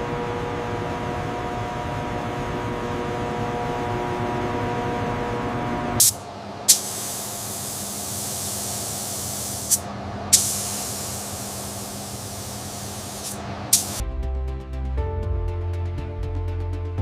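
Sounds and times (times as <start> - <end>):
spray jet hissing: 6.0 - 14.0
music: 14.0 - 17.0.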